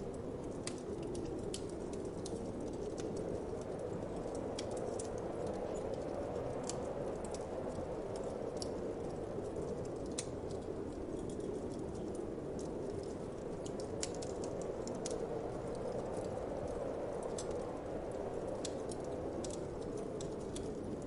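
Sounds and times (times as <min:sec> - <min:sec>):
wood fire crackling and popping: 0:00.0 - 0:21.0.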